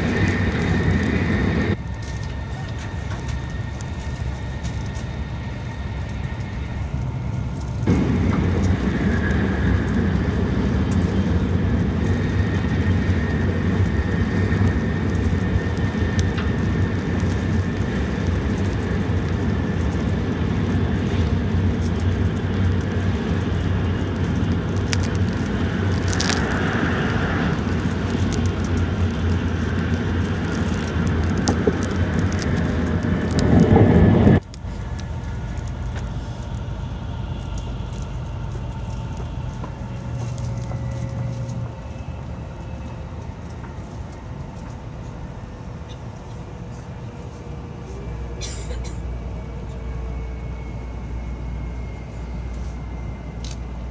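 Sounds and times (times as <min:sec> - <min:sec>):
train wheels and rushing air: 0:00.0 - 0:45.9.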